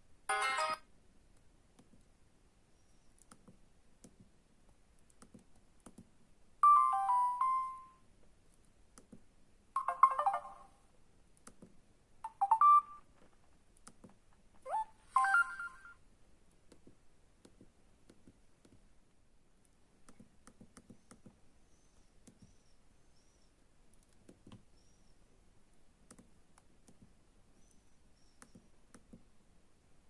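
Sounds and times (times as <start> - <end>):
cell phone ringtone chiming: 0.3 - 0.8, 6.6 - 8.0, 9.8 - 10.8, 12.3 - 13.0, 14.7 - 15.9.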